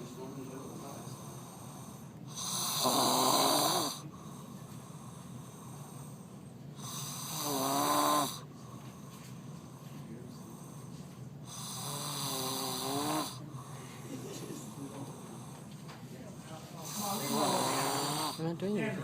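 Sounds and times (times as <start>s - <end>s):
quiet breathing: 0.0s - 2.5s, 3.8s - 7.5s, 8.2s - 19.0s
man snoring: 0.3s - 8.5s, 11.5s - 15.6s, 16.8s - 18.5s.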